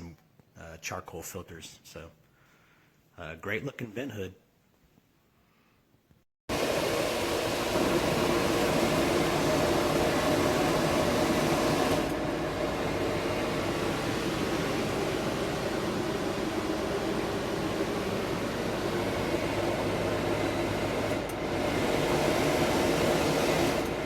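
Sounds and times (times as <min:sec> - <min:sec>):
exhaust fan rushing air: 0:06.5 - 0:24.0.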